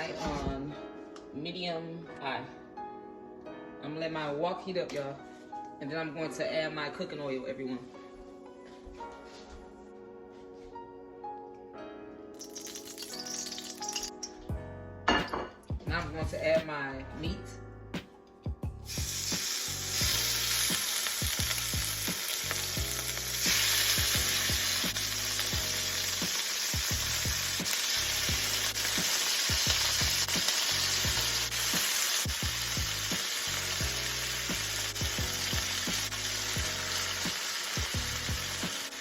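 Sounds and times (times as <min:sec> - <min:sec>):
steak sizzling in a wok: 0:12.4 - 0:14.1, 0:18.8 - 0:39.0.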